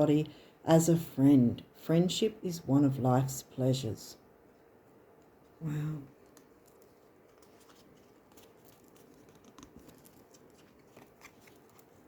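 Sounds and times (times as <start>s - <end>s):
cards clicking and rustling: 6.2s - 12.0s.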